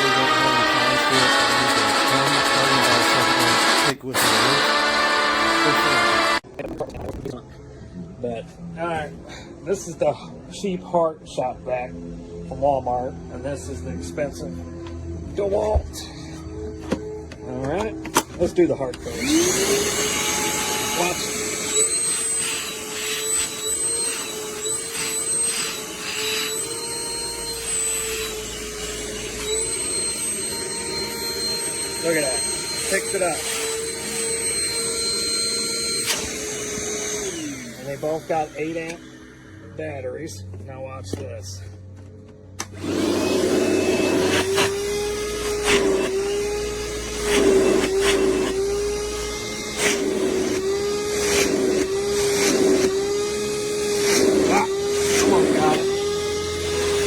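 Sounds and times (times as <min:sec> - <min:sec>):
shop vacuum motor whine: 0:00.0 - 0:06.5, 0:12.0 - 0:40.7, 0:42.0 - 0:57.0
rushing air suction: 0:47.2 - 0:48.6.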